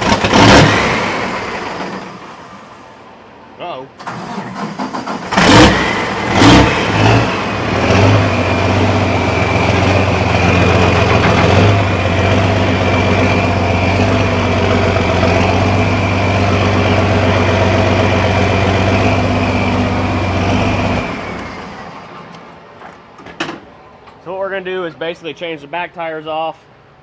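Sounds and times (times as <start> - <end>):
tractor engine idling loudly: 4.1 - 22.3.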